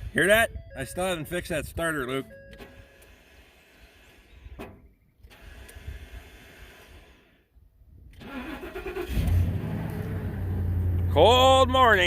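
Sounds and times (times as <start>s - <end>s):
starter motor cranking: 5.2s - 7.3s, 8.1s - 10.2s.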